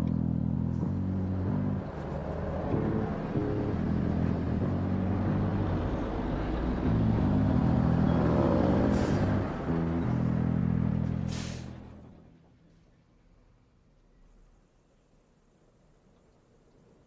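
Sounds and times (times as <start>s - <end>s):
heavy vehicle engine running: 0.0s - 12.8s
short hiss: 11.3s - 11.8s.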